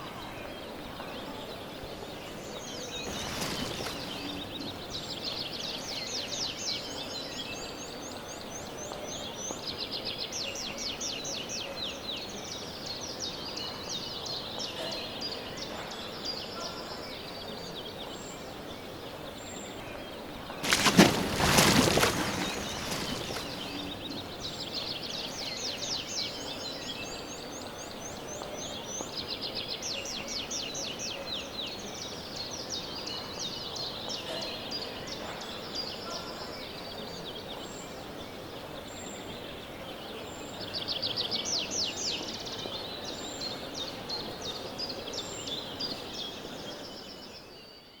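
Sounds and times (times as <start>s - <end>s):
birds trilling high chirps: 2.8s - 5.2s, 20.6s - 25.0s.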